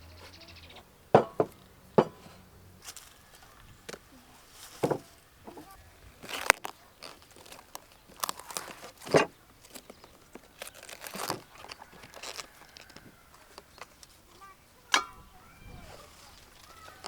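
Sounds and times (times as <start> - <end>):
cabbage leaves tearing and crunching: 2.8 - 3.5, 6.1 - 13.6.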